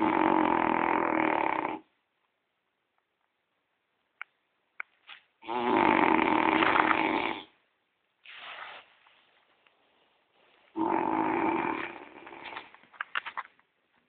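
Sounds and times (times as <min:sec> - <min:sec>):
dog snoring loudly: 0:00.0 - 0:01.9, 0:05.4 - 0:07.5, 0:10.7 - 0:12.6.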